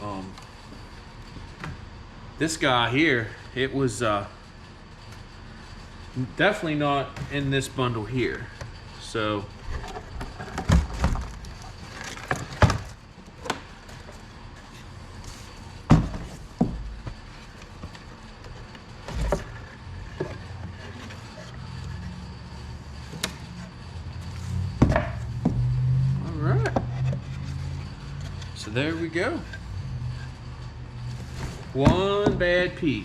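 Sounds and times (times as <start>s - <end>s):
wooden knocks and clunks: 15.8s - 17.2s, 24.8s - 25.7s, 31.5s - 32.5s.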